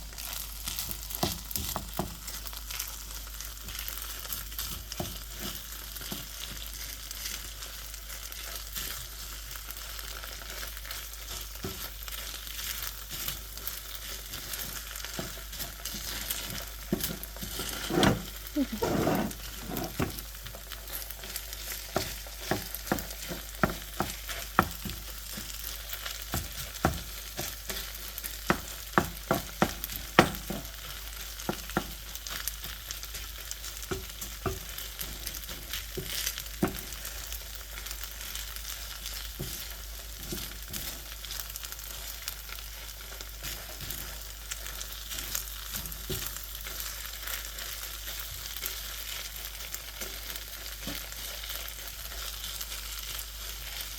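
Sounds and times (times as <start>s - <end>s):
rice sizzling in a frying pan: 0.0s - 53.9s
utensil knocking and scraping pan: 14.3s - 20.6s, 21.8s - 37.2s.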